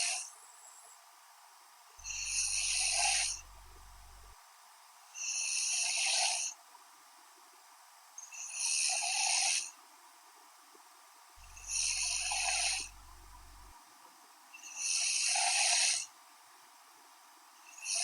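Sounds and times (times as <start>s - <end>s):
woman snoring lightly: 2.0s - 4.4s, 11.4s - 13.7s.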